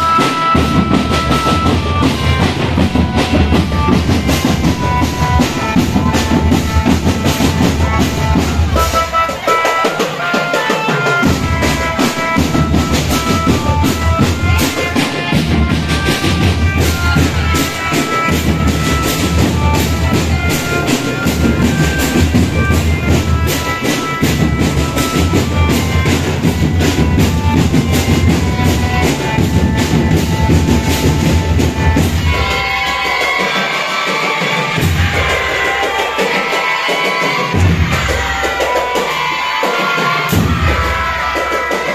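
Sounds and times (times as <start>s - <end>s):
snare and bass drum beats: 0.0s - 33.5s
marching band tune: 0.0s - 41.9s.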